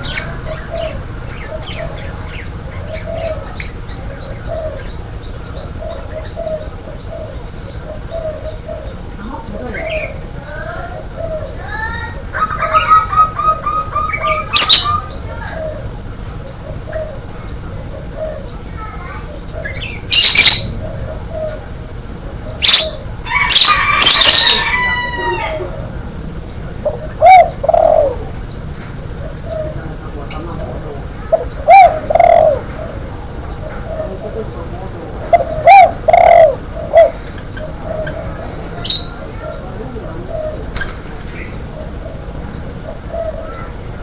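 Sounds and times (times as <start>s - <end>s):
dove cooing: 0.0s - 26.1s, 26.7s - 44.0s
harsh bird squawks: 38.8s - 39.4s.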